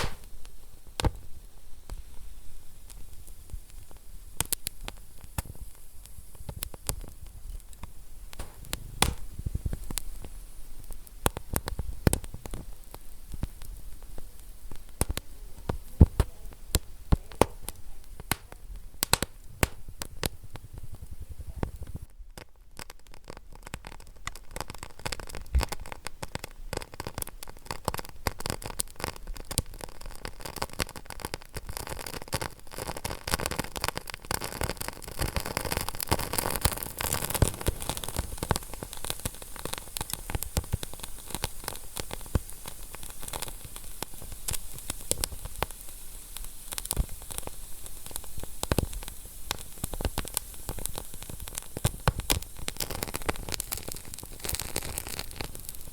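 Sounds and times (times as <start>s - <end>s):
wood fire crackling: 0.0s - 55.9s.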